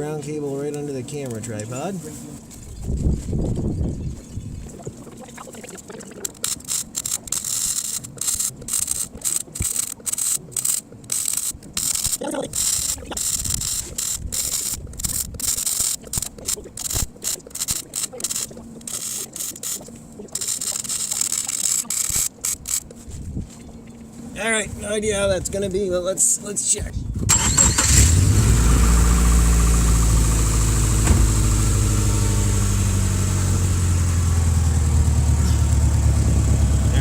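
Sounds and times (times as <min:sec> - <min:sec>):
welding arc crackling: 0:05.1 - 0:22.9.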